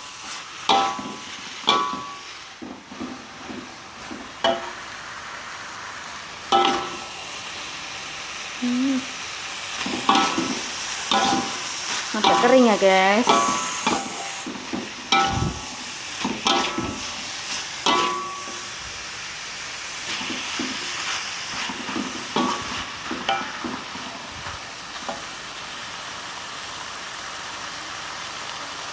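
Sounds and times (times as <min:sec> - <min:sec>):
fish sizzling in a pan: 0:00.0 - 0:28.9
metal spatula clanking on pan: 0:00.7 - 0:04.8, 0:06.5 - 0:07.1, 0:09.8 - 0:18.8, 0:21.6 - 0:24.2.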